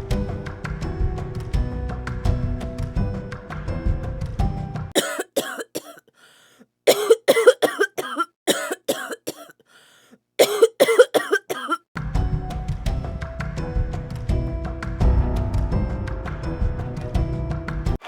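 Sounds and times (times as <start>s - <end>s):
person coughing: 5.0s - 6.1s, 6.9s - 9.6s, 10.4s - 11.9s.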